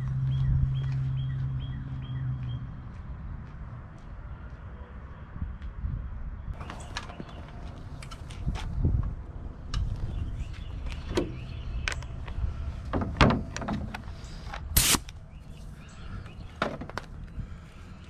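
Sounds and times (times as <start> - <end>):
brad nailer firing: 14.8 - 15.1
short sharp hissing burst: 14.8 - 15.1.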